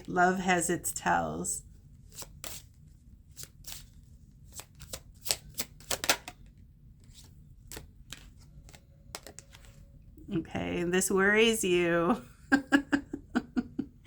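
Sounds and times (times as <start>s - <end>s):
card snaps and taps: 4.5s - 6.5s, 7.7s - 9.6s.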